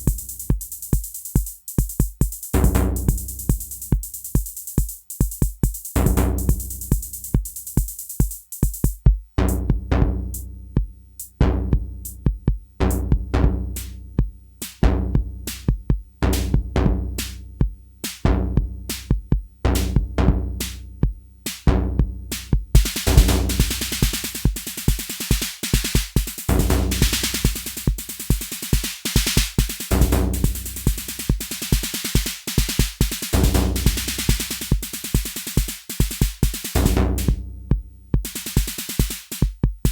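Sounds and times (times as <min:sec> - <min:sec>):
fast bright hi-hat hits: 0:00.0 - 0:09.6, 0:13.8 - 0:14.0, 0:14.6 - 0:14.8, 0:15.5 - 0:16.5, 0:17.2 - 0:17.4, 0:18.0 - 0:18.2, 0:18.9 - 0:19.2, 0:19.8 - 0:20.0, 0:20.6 - 0:20.8, 0:21.5 - 0:21.7, 0:22.3 - 0:37.4, 0:38.2 - 0:39.9
electronic drum machine rhythm: 0:00.0 - 0:39.9.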